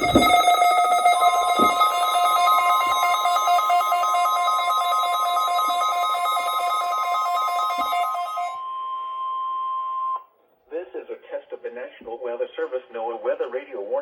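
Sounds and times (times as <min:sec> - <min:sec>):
harsh warbling tone: 0:00.0 - 0:08.6
high warning alarm tone: 0:00.0 - 0:10.3.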